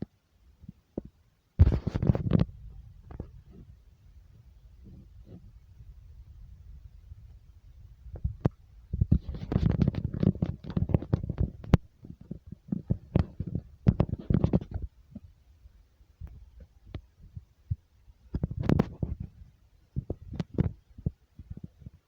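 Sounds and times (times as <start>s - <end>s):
objects rattling and knocking: 1.6s - 3.8s, 8.1s - 15.2s
low earthquake rumble: 1.6s - 15.4s.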